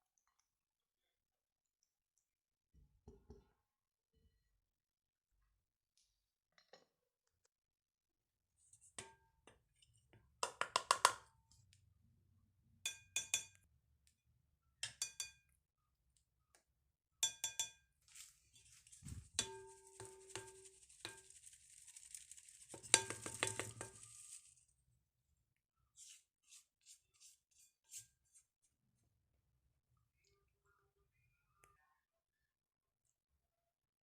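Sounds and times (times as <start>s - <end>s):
utensil clinking against bowl: 17.2s - 17.8s, 22.7s - 24.2s.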